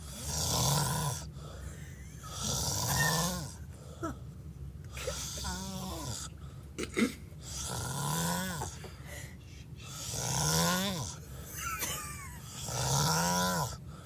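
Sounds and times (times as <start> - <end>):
man snoring heavily: 0.0 - 1.3, 2.2 - 3.6, 5.0 - 6.3, 7.4 - 8.8, 9.8 - 11.4, 12.4 - 13.8.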